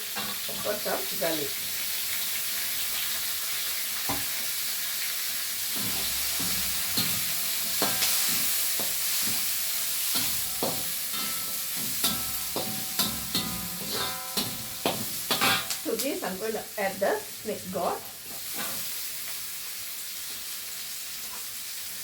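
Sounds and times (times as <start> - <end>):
onions sizzling in hot fat: 0.0 - 22.0
spoon knocking against pan: 10.2 - 15.8.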